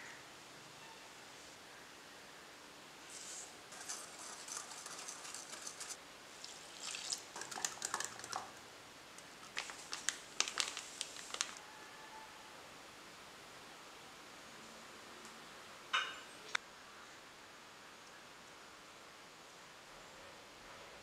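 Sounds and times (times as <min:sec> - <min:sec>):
kitchen clicking and tapping: 0:03.8 - 0:06.0, 0:07.3 - 0:08.6.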